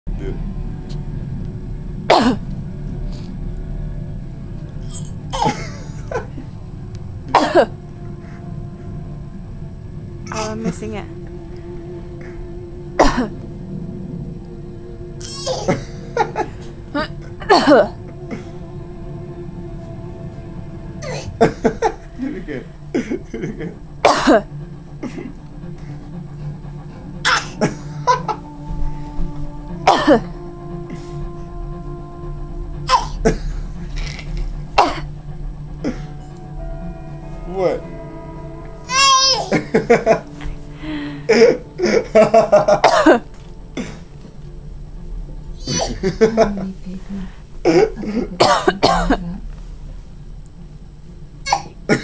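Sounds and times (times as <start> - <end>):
imitated coughs: 23.0 - 25.3, 42.7 - 43.2, 45.6 - 46.2, 47.7 - 49.2.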